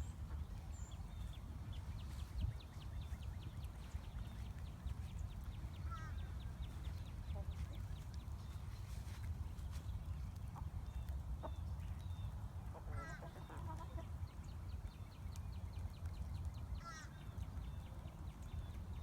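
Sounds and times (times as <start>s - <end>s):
steady low rumble: 0.0s - 19.0s
chickens clucking: 6.6s - 8.2s, 12.6s - 14.3s.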